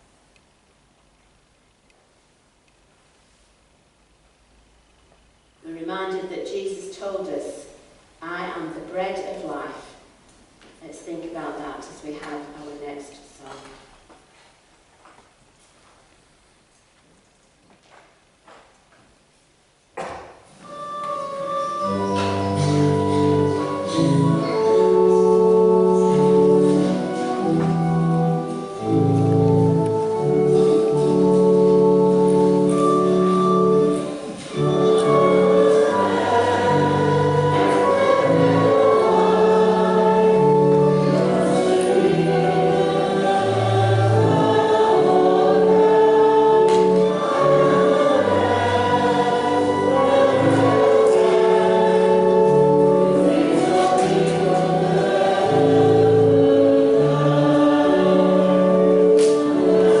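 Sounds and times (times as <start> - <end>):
choir singing a hymn: 20.6 - 60.0
sustained organ chords: 20.6 - 60.0.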